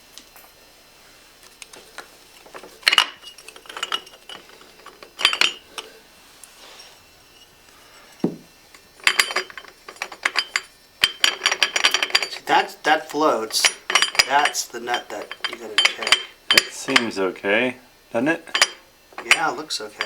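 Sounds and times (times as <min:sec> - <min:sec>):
metal clinking and rattling: 0:01.7 - 0:06.0, 0:06.7 - 0:17.2, 0:18.5 - 0:20.0.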